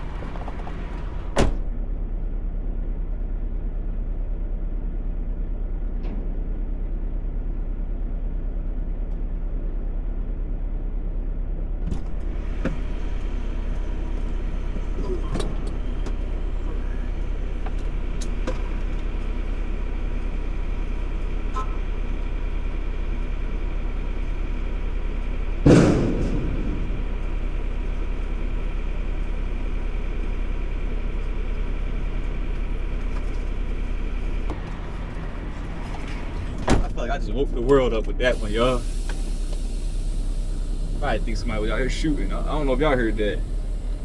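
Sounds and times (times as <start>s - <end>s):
truck engine idling: 0.0s - 44.0s
loud bang with ringing tail: 25.6s - 27.4s.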